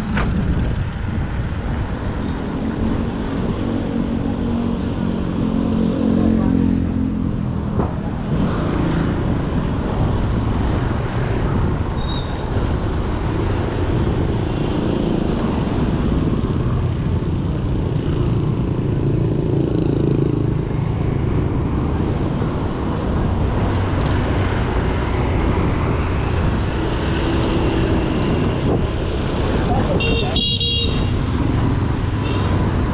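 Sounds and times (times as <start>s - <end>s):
vehicles passing: 0.0s - 32.9s
tyres rolling on road: 19.9s - 30.1s.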